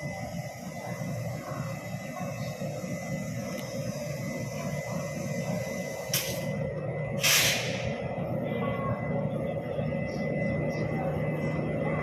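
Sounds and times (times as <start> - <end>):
train rumbling: 0.0 - 12.0
short hisses: 7.2 - 7.8.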